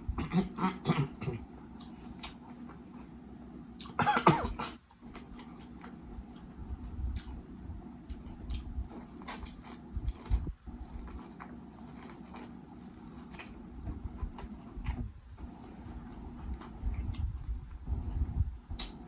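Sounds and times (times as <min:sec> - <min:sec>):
chewing and wet mouth noises: 0:01.6 - 0:03.2, 0:04.9 - 0:17.8
small mouth clicks: 0:18.7 - 0:19.0.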